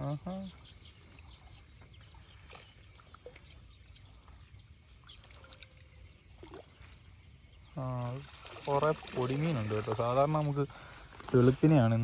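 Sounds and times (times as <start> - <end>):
bird chirps: 0.0 - 8.2.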